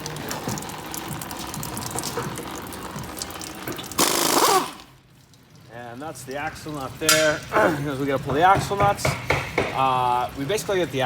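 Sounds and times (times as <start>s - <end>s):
fluid splashing into a pan: 0.0s - 7.5s.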